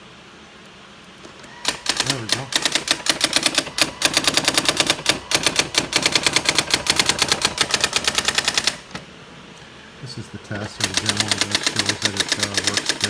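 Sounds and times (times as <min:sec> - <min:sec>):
typewriter print strikes: 0:01.2 - 0:09.1, 0:10.5 - 0:13.0.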